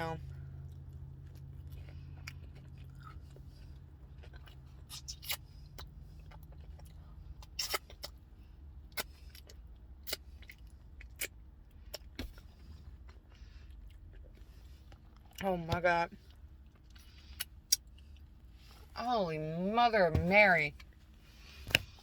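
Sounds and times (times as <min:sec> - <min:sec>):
low hum of car cabin: 0:00.0 - 0:22.0
chewing fries: 0:00.2 - 0:15.4.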